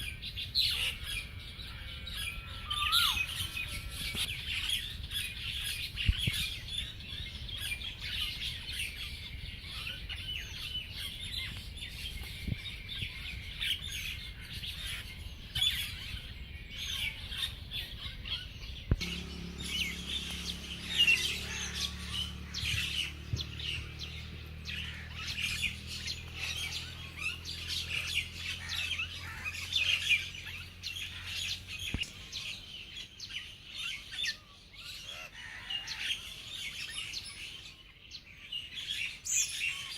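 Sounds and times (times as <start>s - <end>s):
birds chirping and calling: 0.0s - 39.9s
low hum: 11.4s - 33.0s.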